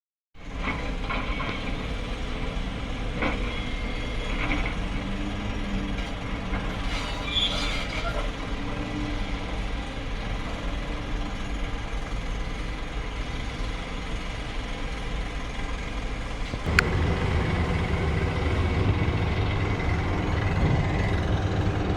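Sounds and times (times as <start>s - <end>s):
excavator engine running: 0.4s - 7.1s, 8.0s - 21.9s
metallic clanks and squeals: 3.1s - 9.1s.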